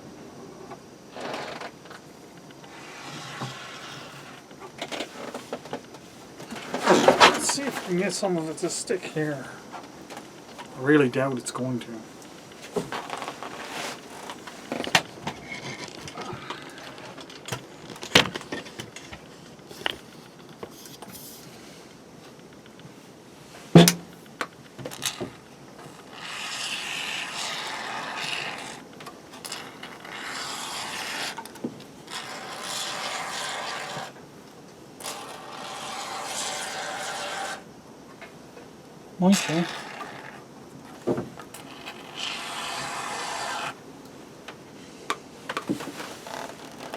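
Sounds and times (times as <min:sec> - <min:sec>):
sharp knock: 0:23.8 - 0:24.1.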